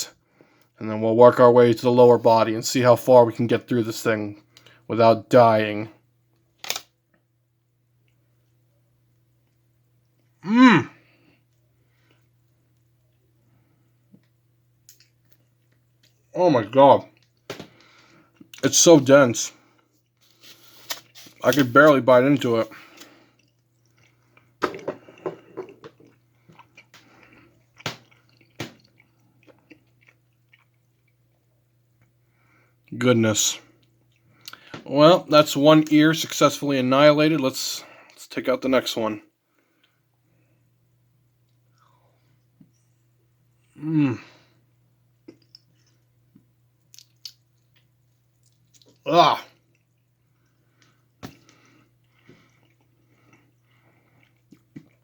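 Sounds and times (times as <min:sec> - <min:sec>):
person grunting: 0:10.4 - 0:11.0, 0:43.8 - 0:44.3
person chewing gummy candy: 0:19.7 - 0:31.7, 0:33.8 - 0:34.7, 0:45.2 - 0:55.0.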